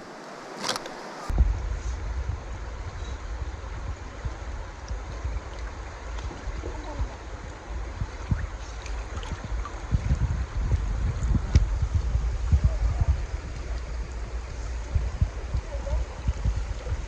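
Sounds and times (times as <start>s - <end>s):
river water rushing: 0.0s - 1.4s
wind buffeting microphone: 1.2s - 17.0s.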